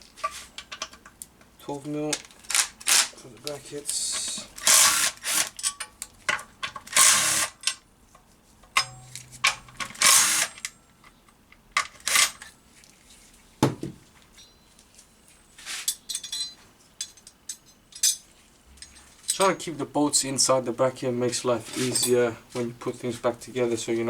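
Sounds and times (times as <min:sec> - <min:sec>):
socket tool bursts: 0:08.8 - 0:10.7.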